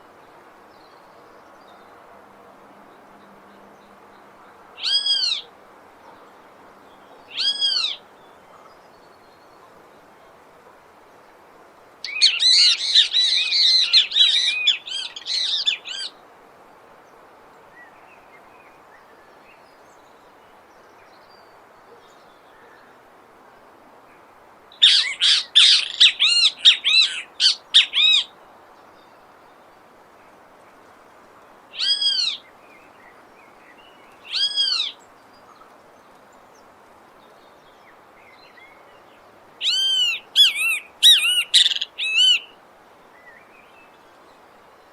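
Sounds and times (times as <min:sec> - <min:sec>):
faint steady background hiss: 0:00.0 - 0:44.9
flycatcher harsh calls: 0:24.8 - 0:28.3, 0:39.6 - 0:42.5.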